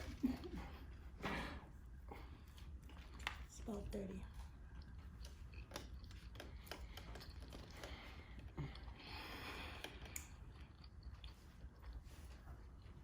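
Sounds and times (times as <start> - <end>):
chewing mouth noises: 1.8 - 13.0.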